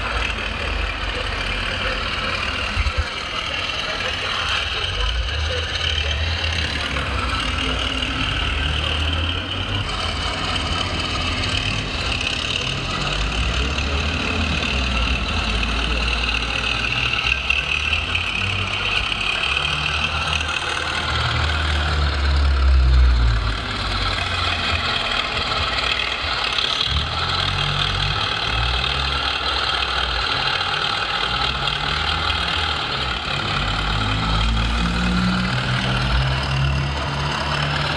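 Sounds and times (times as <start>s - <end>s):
engine-like rumble: 0.0s - 37.9s.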